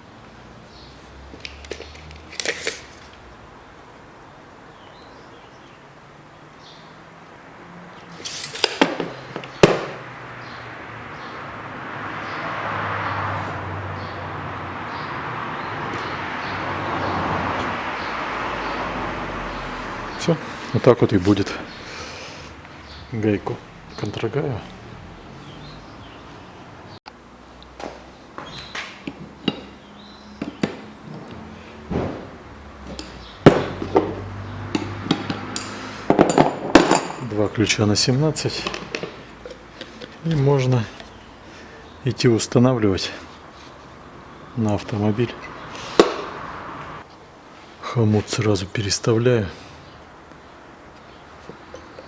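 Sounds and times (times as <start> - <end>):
metal tools clacking: 35.1 - 37.4
wrenches clinking on metal: 35.1 - 37.4.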